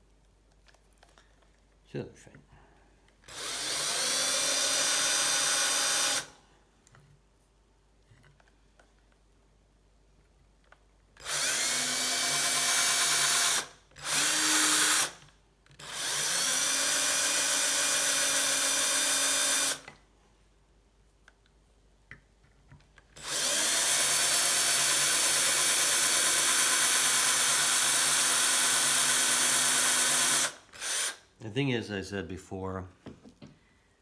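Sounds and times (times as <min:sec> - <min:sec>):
electric drill whining: 0:03.3 - 0:06.4, 0:11.2 - 0:20.0, 0:23.2 - 0:31.2.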